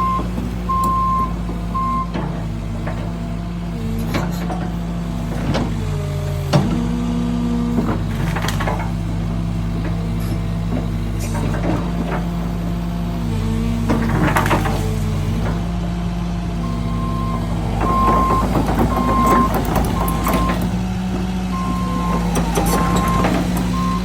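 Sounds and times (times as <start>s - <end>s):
diesel demolition machinery running: 0.0s - 24.0s
debris knocking and cracking: 17.4s - 24.0s.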